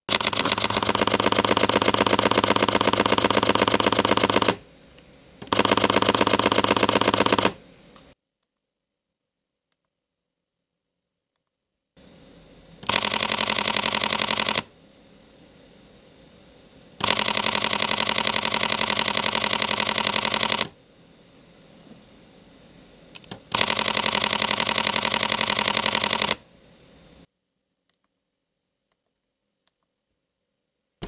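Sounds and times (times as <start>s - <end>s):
camera shutter burst clicks: 0.1s - 8.2s, 12.1s - 20.8s, 22.8s - 27.3s.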